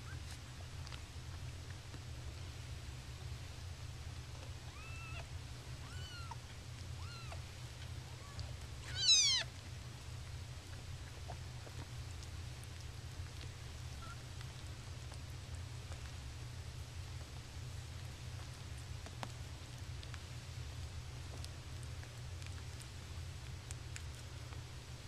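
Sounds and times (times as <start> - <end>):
steady low hum: 0.0 - 25.0
kittens meowing: 4.6 - 7.5, 8.2 - 9.5.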